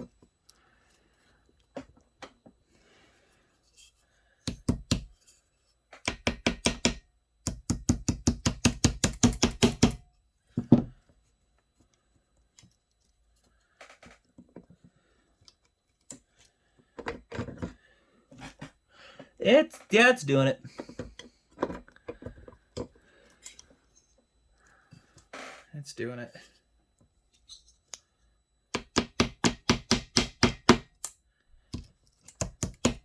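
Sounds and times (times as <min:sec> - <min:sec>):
rapid repeated knocking: 0:06.1 - 0:10.0, 0:28.8 - 0:30.9.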